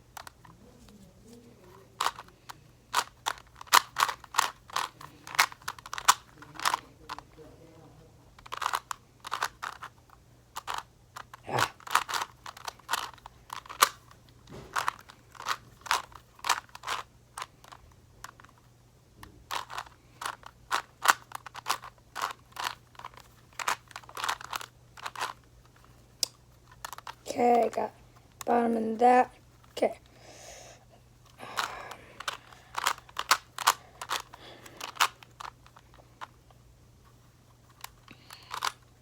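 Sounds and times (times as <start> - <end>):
plastic puzzle cube clicking: 2.0 - 7.3, 8.4 - 18.6, 19.2 - 28.5, 31.6 - 36.4, 37.6 - 39.0.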